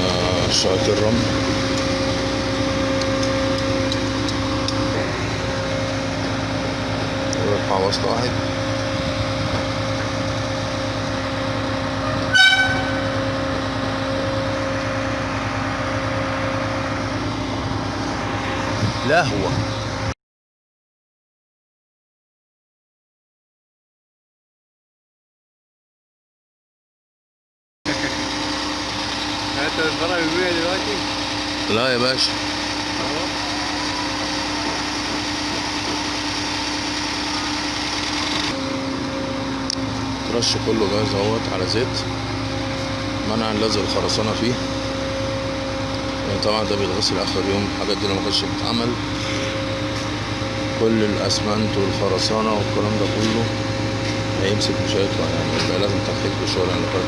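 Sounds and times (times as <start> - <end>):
concrete pump engine droning: 0.0 - 20.2, 27.9 - 57.0
loud horn toot: 12.0 - 13.4.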